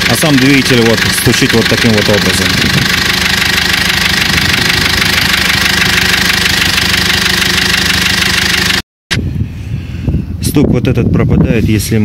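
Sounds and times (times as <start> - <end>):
diesel engine knocking: 0.0 - 8.8.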